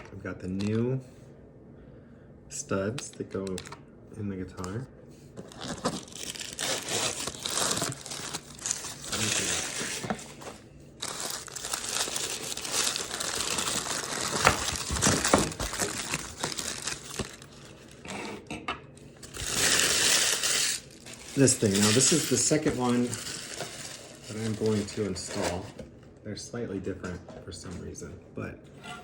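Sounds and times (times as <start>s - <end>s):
plastic packaging crinkling: 5.4s - 18.0s, 19.2s - 25.6s.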